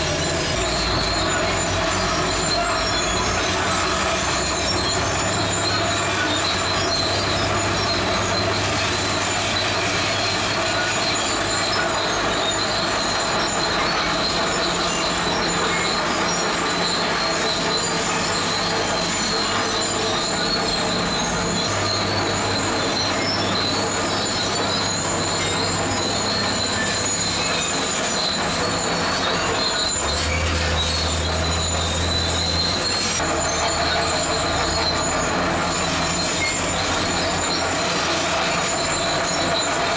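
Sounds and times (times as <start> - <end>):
bulldozer diesel engine: 0.0 - 39.9
steel tracks squealing: 0.0 - 39.9.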